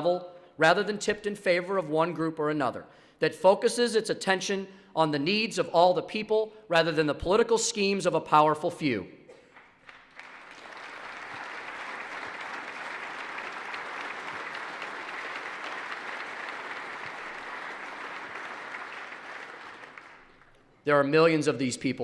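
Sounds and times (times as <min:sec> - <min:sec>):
crowd applause: 0:09.4 - 0:20.8.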